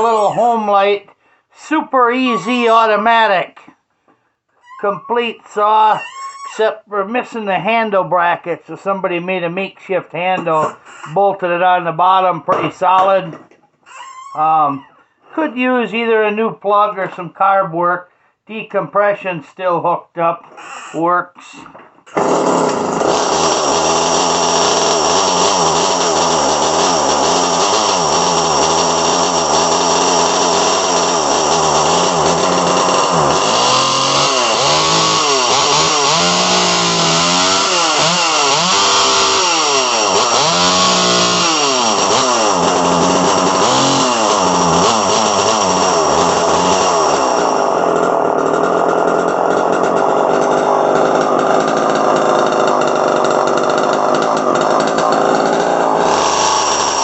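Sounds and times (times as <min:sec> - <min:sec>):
chainsaw revving: 0:00.0 - 0:01.0, 0:01.8 - 0:03.4, 0:10.4 - 0:11.2, 0:22.1 - 0:57.0.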